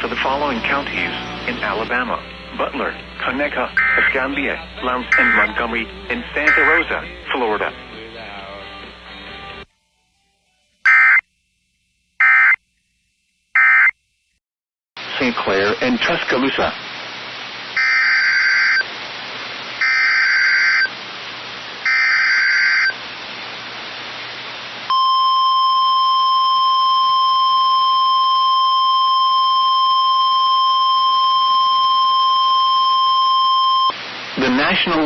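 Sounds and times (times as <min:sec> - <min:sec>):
steady warning alarm tone: 0:03.3 - 0:05.8, 0:06.4 - 0:07.0, 0:10.9 - 0:11.2, 0:12.2 - 0:12.6, 0:13.6 - 0:13.9, 0:17.8 - 0:18.8, 0:19.8 - 0:20.9, 0:21.9 - 0:23.0
warbling digital data screech: 0:03.8 - 0:04.4, 0:05.1 - 0:05.6, 0:06.4 - 0:06.8, 0:17.8 - 0:18.8, 0:19.8 - 0:20.9, 0:21.9 - 0:22.9.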